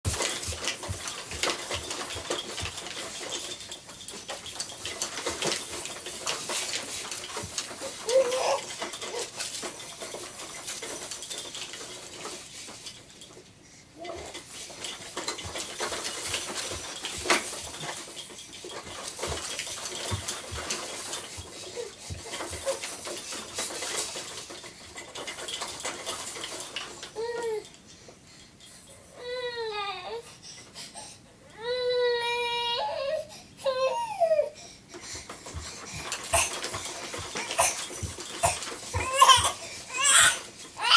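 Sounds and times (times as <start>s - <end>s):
plastic toys rattling and clacking: 0.0s - 30.9s, 31.6s - 40.9s
baby high-pitched vocal sounds: 8.0s - 8.7s, 31.6s - 34.6s.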